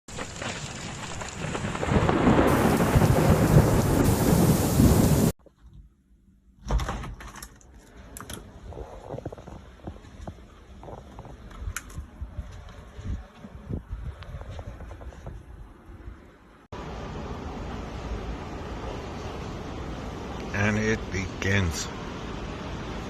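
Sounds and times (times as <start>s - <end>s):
gusting wind: 0.1s - 5.4s, 8.0s - 23.0s
storm noise rushing: 0.3s - 5.4s.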